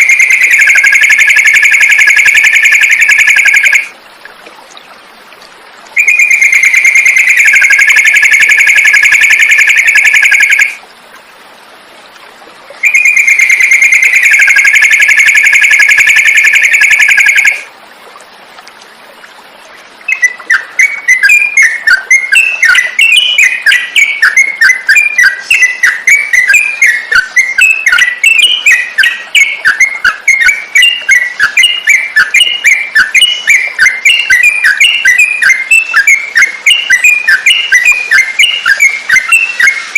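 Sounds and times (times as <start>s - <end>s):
bird chirping rapidly: 0.0s - 3.9s, 6.0s - 10.8s, 12.8s - 17.6s, 20.1s - 39.9s
long whistled bird notes: 6.0s - 10.8s, 12.8s - 17.6s, 20.1s - 39.9s.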